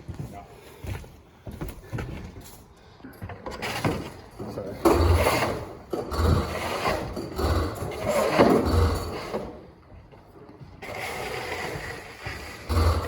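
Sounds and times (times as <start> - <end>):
recoil starter rope scraping: 10.8 - 13.0.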